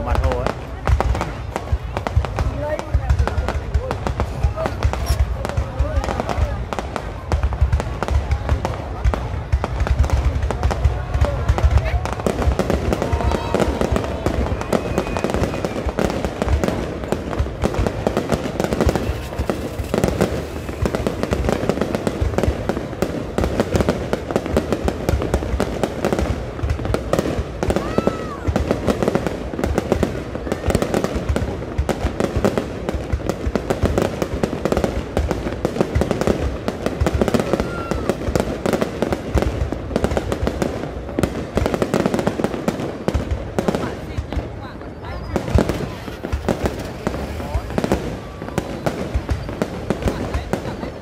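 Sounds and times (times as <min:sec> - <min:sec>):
fireworks bangs and crackling: 0:00.0 - 0:51.0
faint firework whistle: 0:12.9 - 0:16.3, 0:48.0 - 0:49.7.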